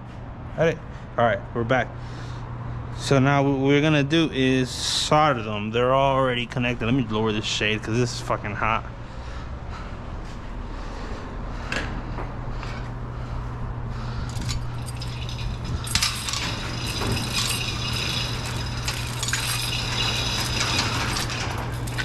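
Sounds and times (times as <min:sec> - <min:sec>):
steady low hum: 0:00.0 - 0:22.0
shade clinking and rattling: 0:14.1 - 0:22.0.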